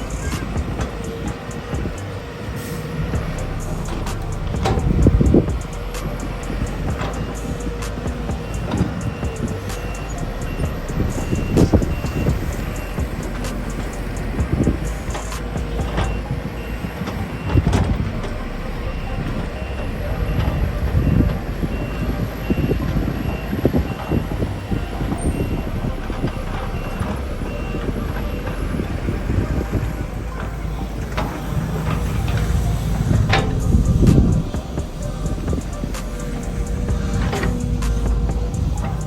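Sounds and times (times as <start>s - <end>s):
backup alarm beeping: 0.0s - 39.0s
excavator engine running: 0.0s - 39.0s
metal knocks and clanks: 3.1s - 18.4s, 25.1s - 39.0s.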